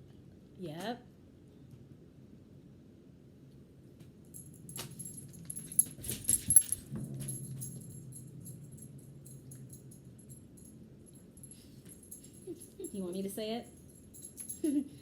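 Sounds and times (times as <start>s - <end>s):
dog collar tags jingling: 4.3s - 15.0s
sharp clinks of tags: 4.3s - 15.0s.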